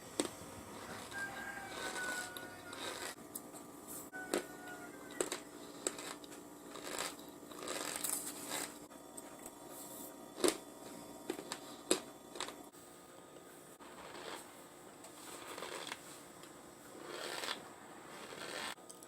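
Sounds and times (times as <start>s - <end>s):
crunchy chewing: 0.2s - 3.2s, 4.2s - 8.8s.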